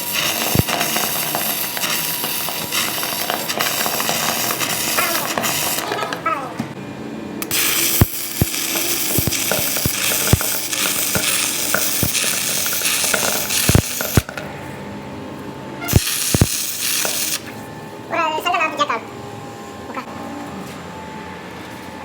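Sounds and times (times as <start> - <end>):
harsh hiss: 0.0 - 5.8, 7.4 - 14.3, 15.9 - 17.5.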